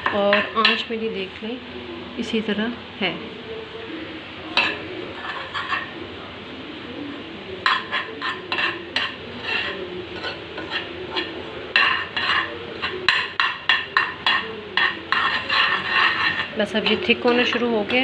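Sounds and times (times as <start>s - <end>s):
utensil scraping a pan: 4.5s - 6.1s, 7.6s - 18.0s.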